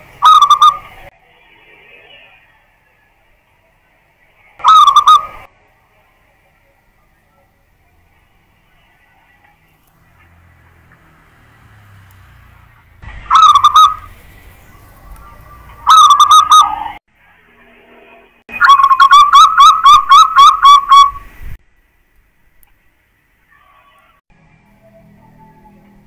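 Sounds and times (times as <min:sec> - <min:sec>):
dove cooing: 0:00.2 - 0:00.9, 0:04.6 - 0:05.5, 0:13.3 - 0:14.1, 0:15.3 - 0:17.0.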